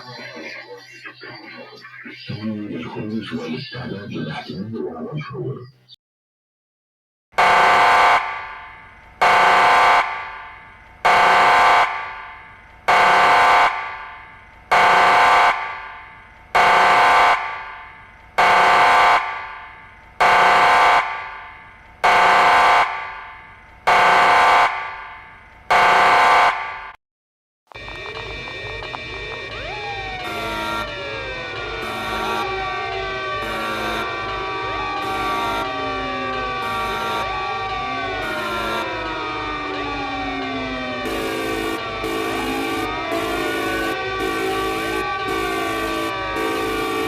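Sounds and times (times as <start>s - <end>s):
alarm horn blasts with echo: 7.4s - 15.9s, 16.6s - 26.9s, 30.2s - 47.0s.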